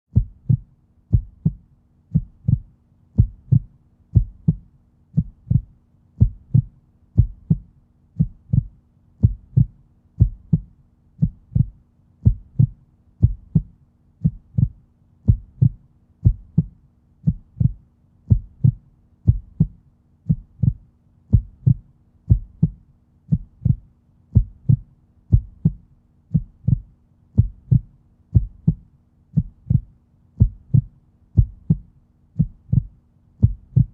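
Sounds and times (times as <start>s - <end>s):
faint steady hum: 0.1s - 33.9s
heartbeat thumps: 0.1s - 33.9s.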